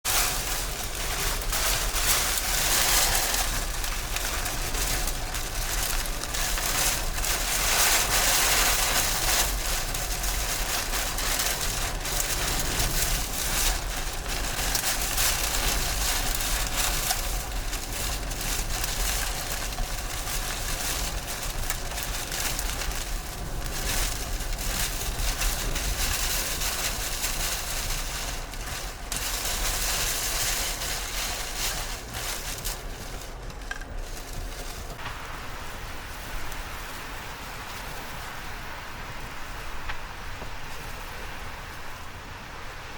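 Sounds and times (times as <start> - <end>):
heavy rain: 0.0 - 42.9
storm wind: 0.0 - 42.9.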